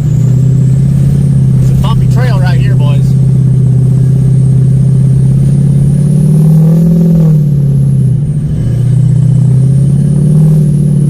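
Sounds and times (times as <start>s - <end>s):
diesel truck engine revving: 0.0s - 11.0s.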